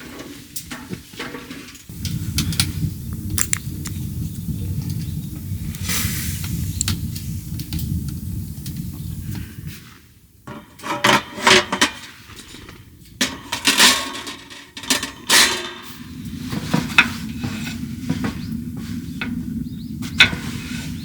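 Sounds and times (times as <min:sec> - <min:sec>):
hard objects clattering and scraping: 0:03.2 - 0:04.0.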